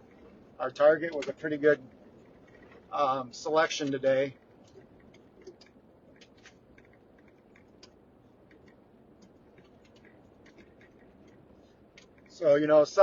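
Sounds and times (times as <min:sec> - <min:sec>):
light ticks and clicks: 0:01.0 - 0:02.8.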